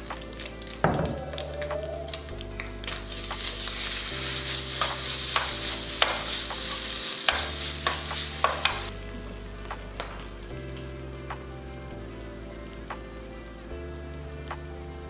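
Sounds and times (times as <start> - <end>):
food sizzling in a frying pan: 0.0 - 14.8
utensil scraping a pan: 2.8 - 8.9.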